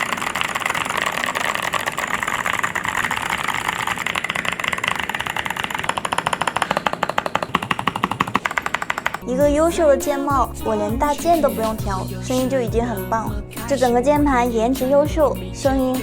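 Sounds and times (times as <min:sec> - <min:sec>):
mechanical keyboard typing: 0:00.0 - 0:09.3.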